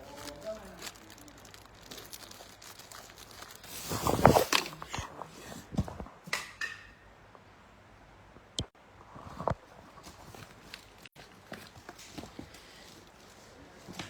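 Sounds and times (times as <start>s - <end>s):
rustling and crinkling: 0.0s - 6.1s, 9.0s - 14.0s.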